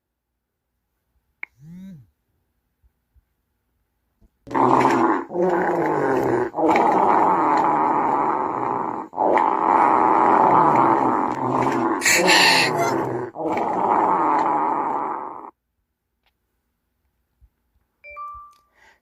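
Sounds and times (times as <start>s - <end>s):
raspy low farts: 4.5s - 15.5s.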